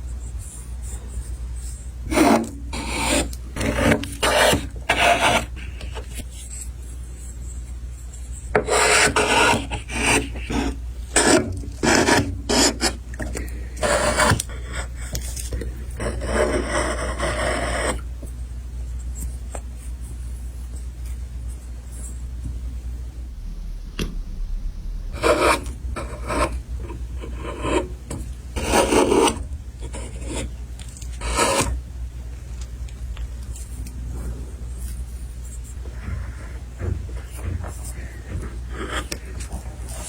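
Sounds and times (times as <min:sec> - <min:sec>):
steady low hum: 0:19.8 - 0:40.0.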